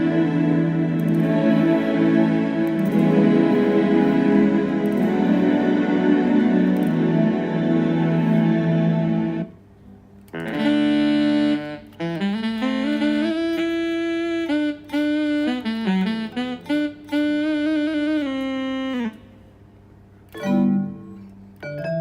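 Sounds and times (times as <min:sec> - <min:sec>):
guitar synthesizer lead melody: 0:00.0 - 0:09.5, 0:20.4 - 0:22.0.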